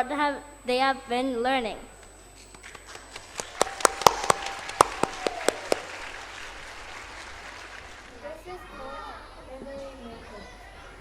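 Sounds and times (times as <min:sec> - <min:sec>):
loud sharp claps: 0:02.5 - 0:08.4
audience applauding: 0:02.6 - 0:08.5.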